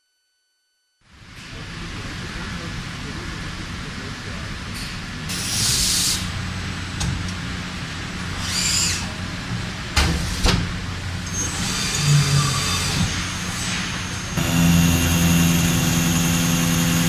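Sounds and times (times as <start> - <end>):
machine hissing: 11.4 - 17.0
machine humming: 14.4 - 17.0.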